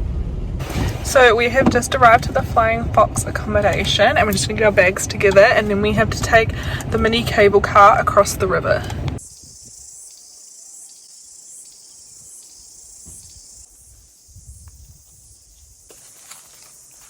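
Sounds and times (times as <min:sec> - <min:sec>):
faint low rumbles: 0:00.0 - 0:09.2
high-pitched insect chorus: 0:09.2 - 0:17.0.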